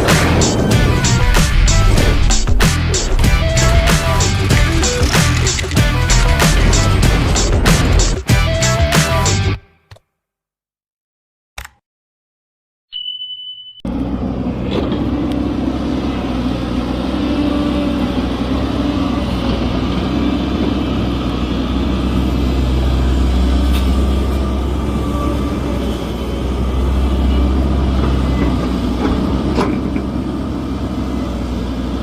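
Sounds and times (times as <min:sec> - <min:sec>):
excavator diesel engine running: 0:00.0 - 0:09.6, 0:13.9 - 0:32.0
short high beep: 0:12.9 - 0:13.9.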